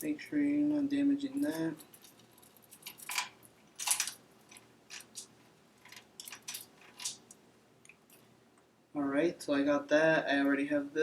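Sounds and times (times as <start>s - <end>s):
metallic clicks and rattles: 1.4s - 7.4s.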